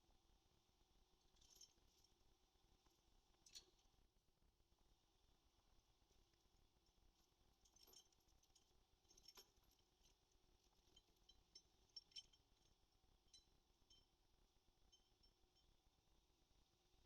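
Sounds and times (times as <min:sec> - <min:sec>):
faint high clinks: 0:07.2 - 0:15.9.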